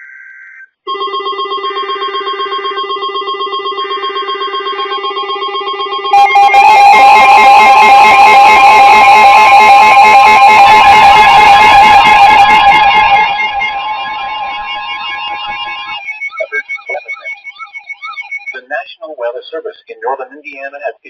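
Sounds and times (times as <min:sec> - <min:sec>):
harsh blend of alarm tones: 0:00.0 - 0:21.0
fast-pulsing alarm tone: 0:00.9 - 0:18.6
screechy data bursts: 0:10.2 - 0:18.7.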